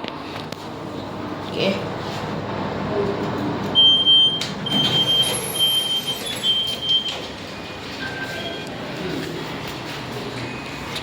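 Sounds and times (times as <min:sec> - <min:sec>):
high electronic beep: 0:03.8 - 0:08.7.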